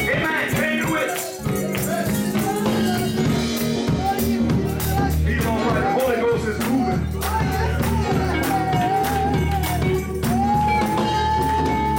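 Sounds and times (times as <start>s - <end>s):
drums and band: 0.0s - 11.9s
tambourine shaken in rhythm: 0.0s - 11.9s
voices singing or shouting: 0.0s - 11.9s.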